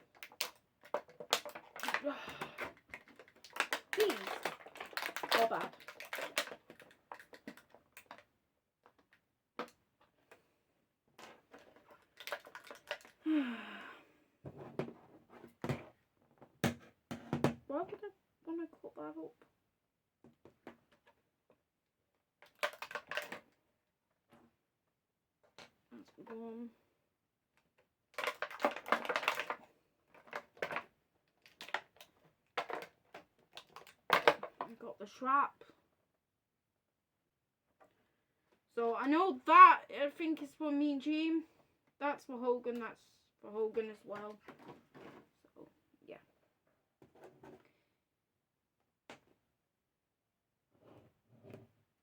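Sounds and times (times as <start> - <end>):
plastic packaging clicks and taps: 0.1 - 8.2, 22.4 - 23.4, 28.2 - 29.6.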